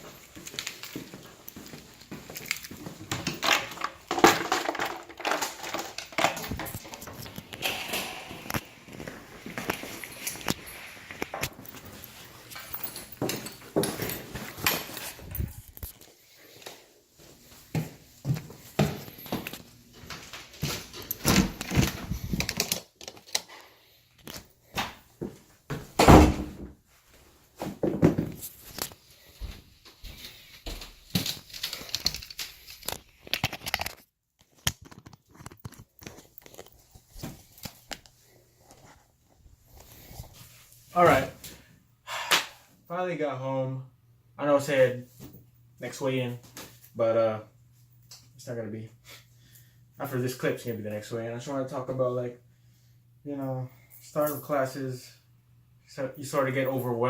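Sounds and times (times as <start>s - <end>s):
objects clattering and knocking: 2.4s - 15.9s, 27.6s - 29.0s
loud thud: 26.0s - 26.7s.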